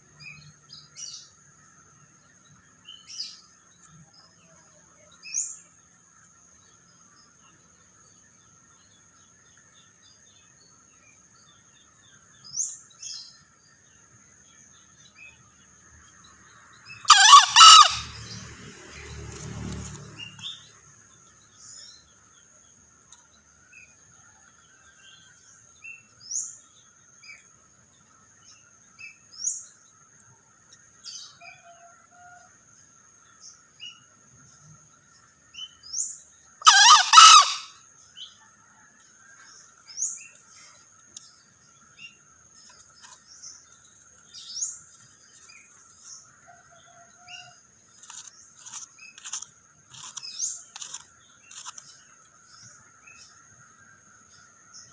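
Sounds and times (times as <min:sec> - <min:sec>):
junglefowl crowing: 0:17.0 - 0:18.5, 0:36.6 - 0:37.8.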